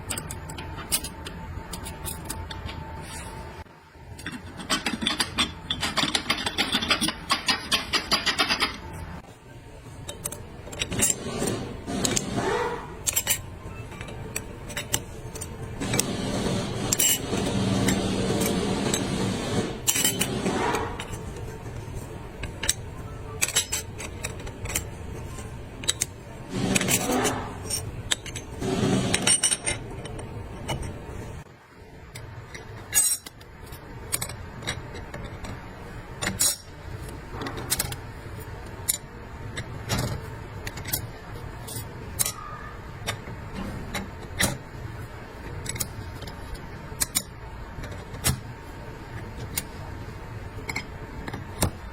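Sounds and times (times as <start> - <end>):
short scraping noises: 20.3 - 21.2.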